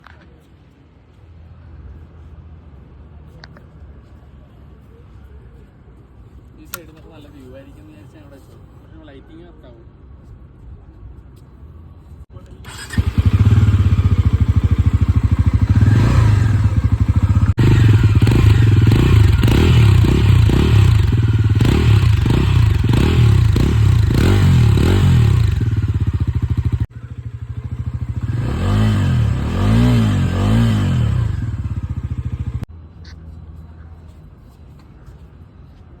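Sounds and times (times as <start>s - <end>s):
motorcycle engine revving: 12.6s - 32.7s.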